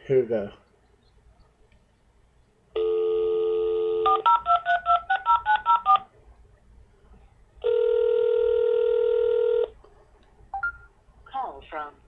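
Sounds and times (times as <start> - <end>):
telephone dial tone: 2.8 - 6.0, 7.6 - 9.7
telephone ringback tone: 2.8 - 6.0, 7.6 - 9.7
touch-tone keypad beeps: 10.6 - 10.9.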